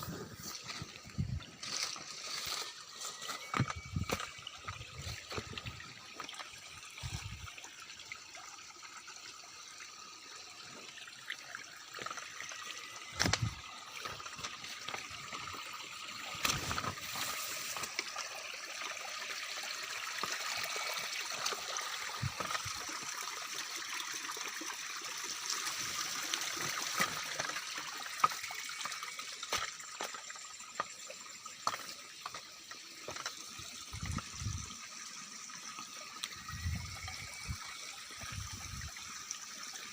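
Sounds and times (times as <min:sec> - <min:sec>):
insects trilling: 0:25.9 - 0:39.1.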